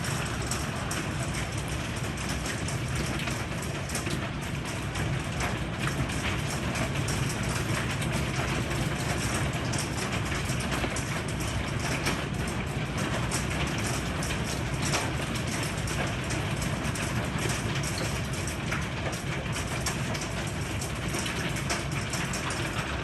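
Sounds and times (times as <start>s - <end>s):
low rumble of downpour: 0.0s - 23.0s
rain ticking on hard surfaces: 0.0s - 23.0s.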